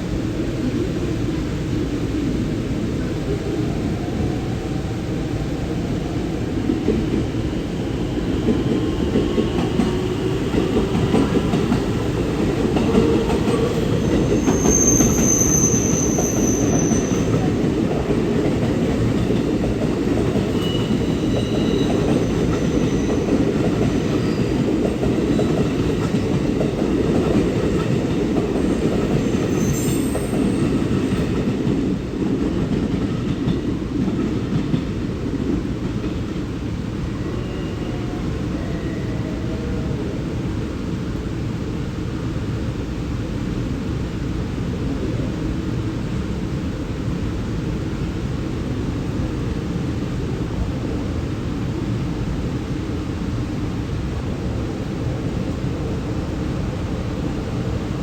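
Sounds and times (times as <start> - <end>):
train rumbling: 0.0 - 58.0
high wheel squeals: 14.0 - 17.4, 20.5 - 23.3, 29.3 - 30.6.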